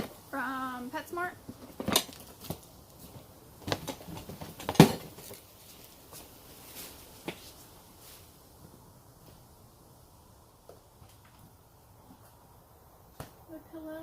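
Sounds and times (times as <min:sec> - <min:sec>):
objects knocking and clattering: 0:01.4 - 0:05.5.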